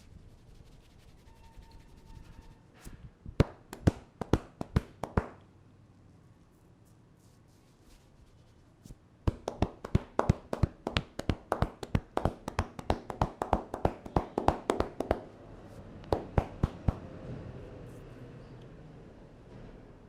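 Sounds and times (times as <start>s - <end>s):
hands tapping and slapping head: 3.4s - 5.4s, 9.3s - 15.3s, 16.1s - 17.0s.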